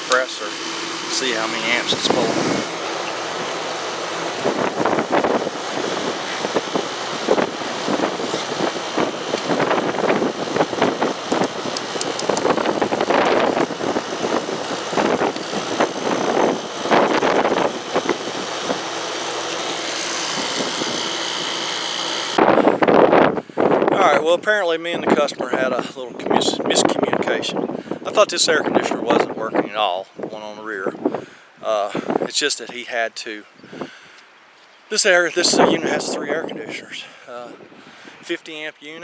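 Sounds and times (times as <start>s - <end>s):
air conditioner humming: 0.0s - 24.4s.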